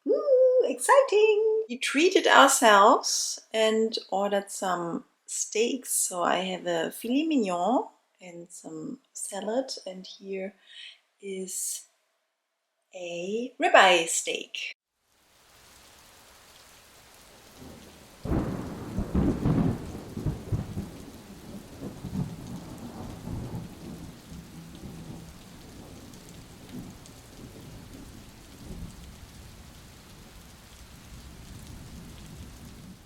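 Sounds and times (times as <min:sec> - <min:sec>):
rain hissing: 0:15.0 - 0:33.0
low roll of thunder: 0:17.4 - 0:33.0.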